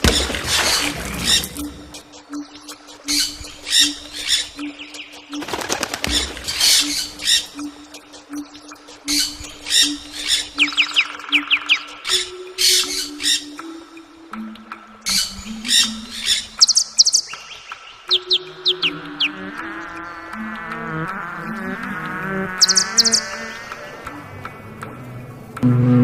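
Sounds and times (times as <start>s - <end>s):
falling bird chirps: 0.0s - 2.0s, 22.6s - 23.9s
wings flapping: 0.0s - 2.0s, 5.3s - 7.5s
bird squawking: 3.0s - 7.9s, 22.6s - 24.2s.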